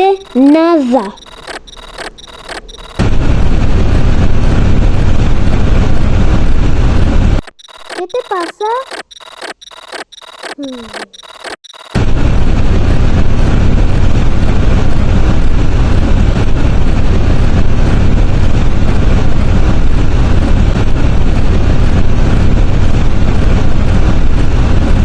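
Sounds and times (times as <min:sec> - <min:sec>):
loud rumbling with low hum: 0:02.1 - 0:07.4, 0:12.0 - 0:25.0.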